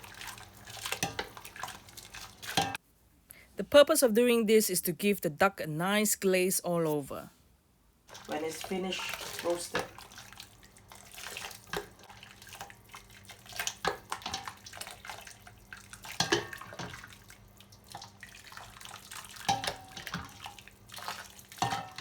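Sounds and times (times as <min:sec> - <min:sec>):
liquid splashing and dripping: 0:00.0 - 0:02.8, 0:08.1 - 0:22.0.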